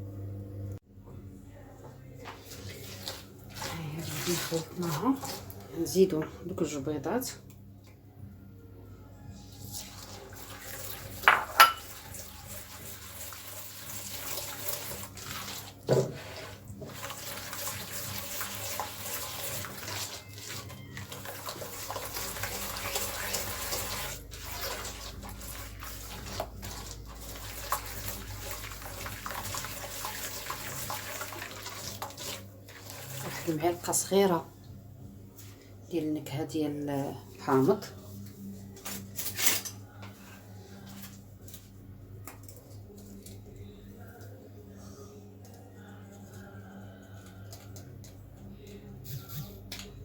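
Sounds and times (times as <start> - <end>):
wet dough stirring in bowl: 2.0 - 7.4, 9.4 - 34.5.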